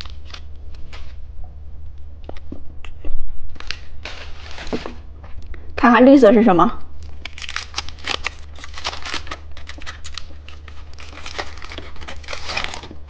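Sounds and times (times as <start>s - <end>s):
plastic wrapper crinkling: 0.0s - 1.2s, 3.5s - 5.0s, 6.9s - 13.0s.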